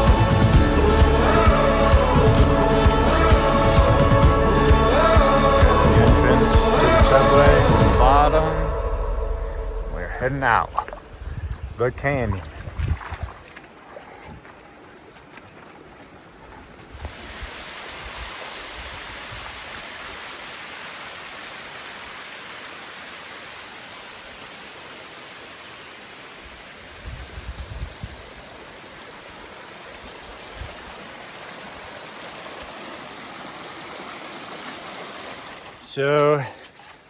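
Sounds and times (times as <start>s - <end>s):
creek water rushing: 0.0s - 8.7s, 12.2s - 36.6s
low thumps: 0.0s - 13.2s.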